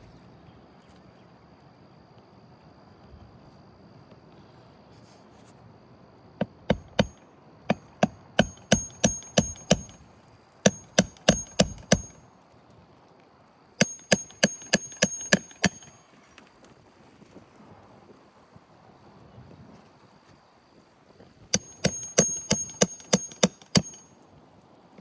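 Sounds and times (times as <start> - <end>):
hammer striking with metallic ring: 6.7 - 10.0, 10.7 - 12.2, 13.8 - 16.0, 21.6 - 24.1.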